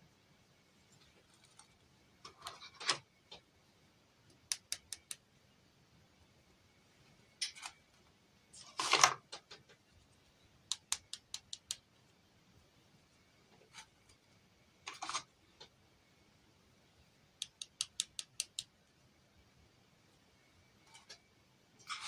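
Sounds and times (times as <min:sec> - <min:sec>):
plastic pieces clicking: 0:17.4 - 0:18.7.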